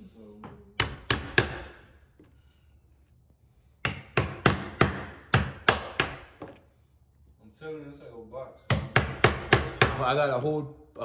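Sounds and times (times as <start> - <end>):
hammer strikes: 0.8 - 2.0, 3.8 - 6.6, 8.6 - 10.2.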